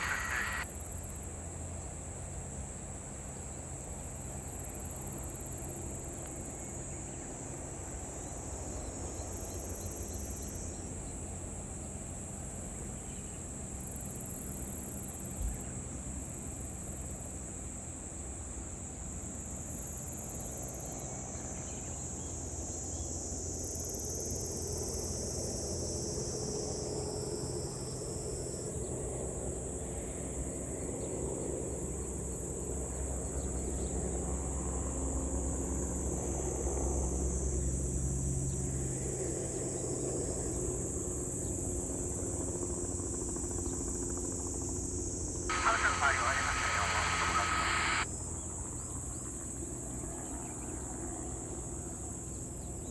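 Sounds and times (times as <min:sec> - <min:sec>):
insects shrilling: 0:00.0 - 0:00.6
low steady drone: 0:00.0 - 0:00.6, 0:45.5 - 0:48.0.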